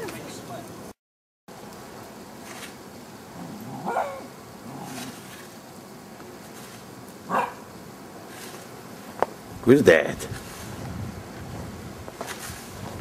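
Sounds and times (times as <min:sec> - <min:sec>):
dog barking: 0:03.8 - 0:04.3, 0:07.3 - 0:07.7.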